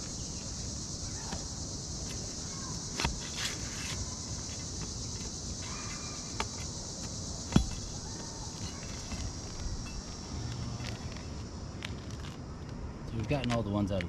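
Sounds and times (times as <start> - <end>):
high insect drone: 0.0 - 14.0.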